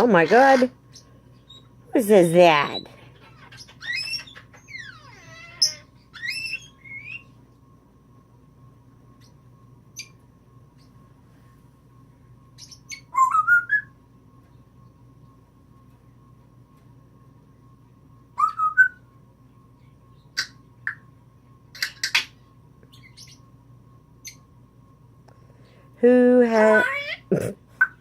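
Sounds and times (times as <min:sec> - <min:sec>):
parrot whistling and chirping: 0:03.2 - 0:07.4, 0:12.6 - 0:14.0, 0:18.4 - 0:19.1, 0:22.9 - 0:23.4.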